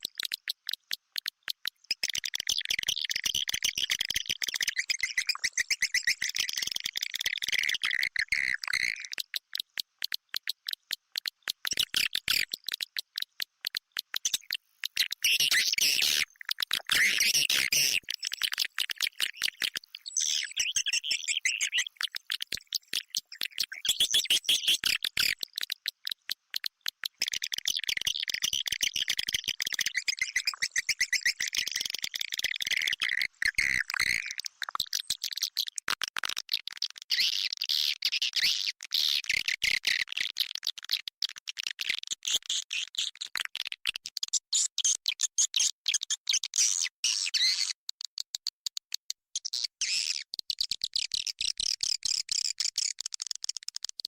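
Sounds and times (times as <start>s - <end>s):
swiftlet chirps and twitters: 14.3s - 25.0s.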